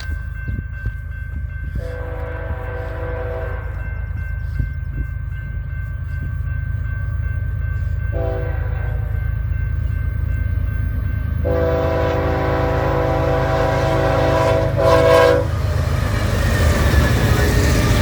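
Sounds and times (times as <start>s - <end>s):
low rumble of train: 0.0s - 18.0s
locomotive air horn blasts: 1.8s - 3.8s, 8.1s - 9.2s, 11.4s - 15.6s.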